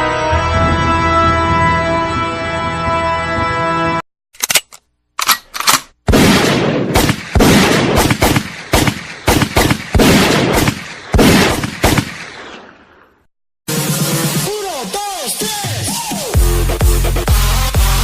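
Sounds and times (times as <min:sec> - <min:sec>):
gunshots: 0:05.6 - 0:13.0.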